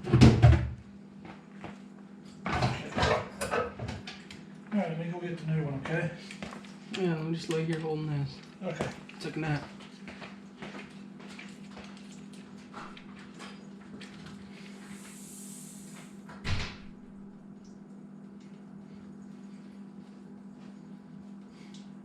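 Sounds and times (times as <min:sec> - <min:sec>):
steady low hum: 0:00.1 - 0:22.0.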